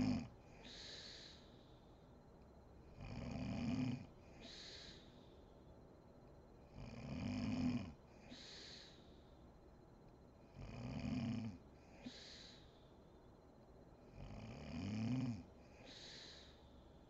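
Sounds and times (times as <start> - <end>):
woman snoring: 0.0 - 1.4, 3.0 - 5.0, 6.7 - 9.0, 10.5 - 12.6, 14.1 - 16.6
breathy hissing out-breath: 0.0 - 1.9, 4.3 - 5.4, 8.2 - 9.4, 11.9 - 13.0, 15.7 - 17.0.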